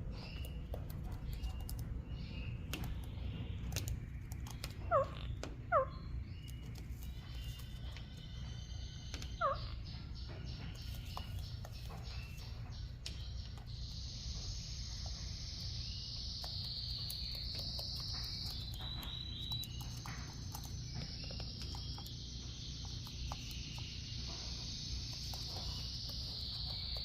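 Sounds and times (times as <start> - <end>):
low steady hum: 0.0 - 27.0
crickets chirping: 11.9 - 27.0.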